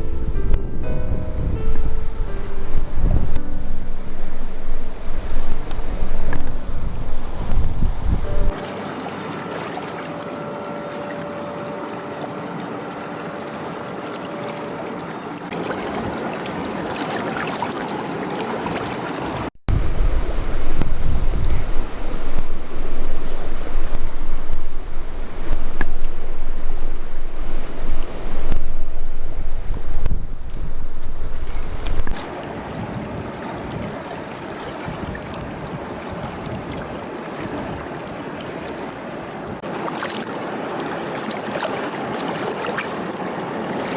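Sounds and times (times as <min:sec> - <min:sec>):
wind buffeting microphone: 0:00.0 - 0:08.6, 0:19.7 - 0:34.1, 0:34.8 - 0:38.2
river water rushing: 0:00.0 - 0:35.0, 0:37.0 - 0:43.9.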